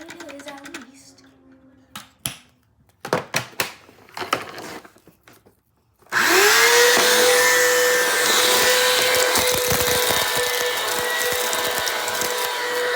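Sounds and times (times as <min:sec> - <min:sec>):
vacuum cleaner motor whining: 0:06.1 - 0:12.9.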